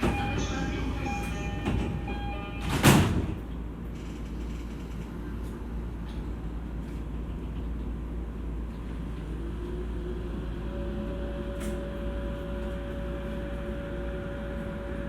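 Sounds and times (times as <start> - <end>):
low hum of standing train: 0.0 - 15.0
sliding doors shutting with thud: 1.6 - 3.4.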